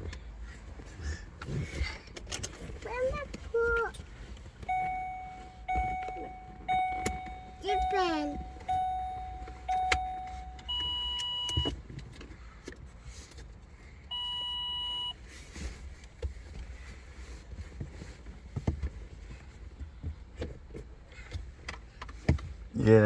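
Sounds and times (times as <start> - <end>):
electronic beeps: 4.7 - 11.7.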